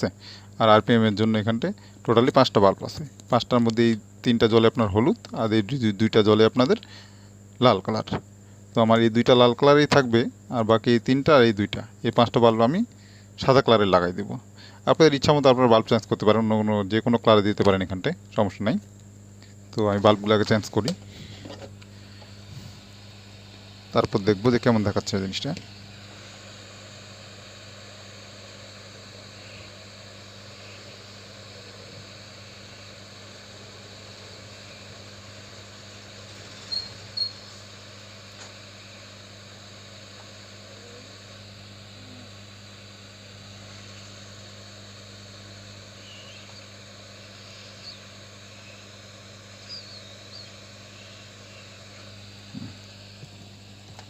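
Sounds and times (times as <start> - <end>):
electrical hum: 0.0 - 54.0
faint hiss: 19.4 - 53.5.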